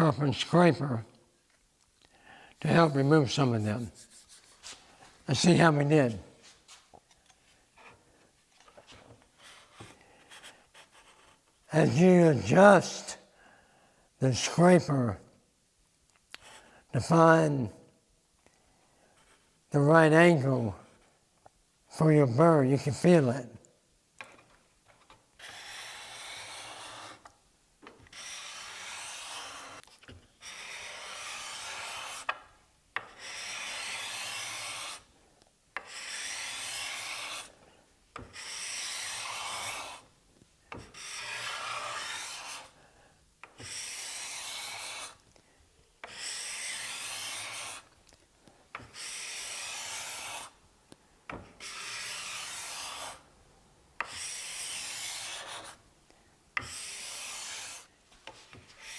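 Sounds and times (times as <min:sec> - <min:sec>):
card scraper shaving wood: 0:25.4 - 0:27.2, 0:28.1 - 0:32.3, 0:33.2 - 0:35.0, 0:40.9 - 0:42.6.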